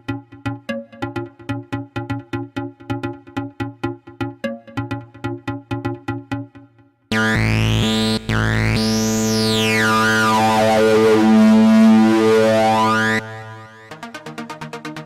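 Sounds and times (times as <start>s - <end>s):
held synth chord sweeping: 7.1s - 14.2s.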